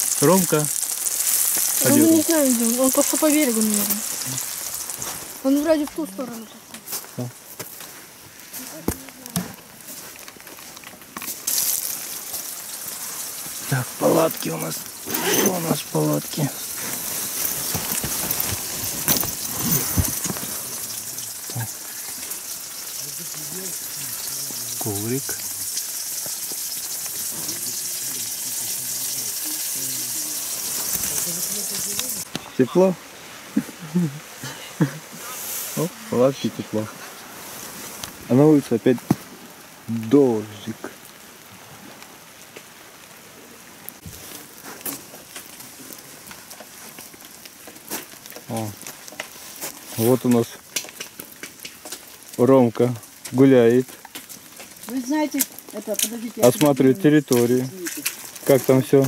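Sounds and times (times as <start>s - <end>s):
rain hissing: 0.0s - 59.0s
handling knocks and rustles: 16.8s - 20.7s.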